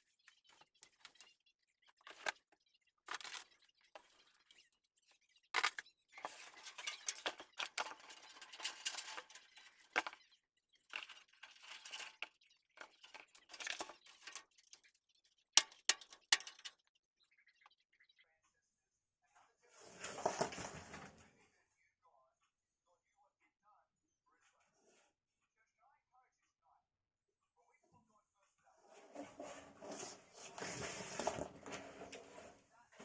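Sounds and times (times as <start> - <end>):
plastic and metal clicks: 15.6 - 16.8.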